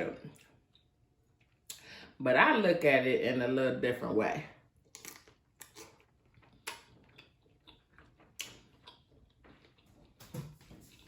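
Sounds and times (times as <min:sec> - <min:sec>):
quiet chewing: 0:04.8 - 0:10.2
mouth clicks and smacks: 0:06.5 - 0:09.0.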